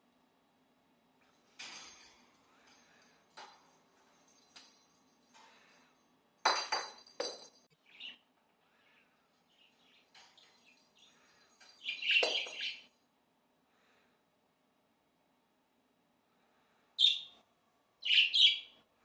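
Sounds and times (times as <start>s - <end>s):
toy balls knocking on floor: 6.4s - 7.6s, 12.1s - 12.8s.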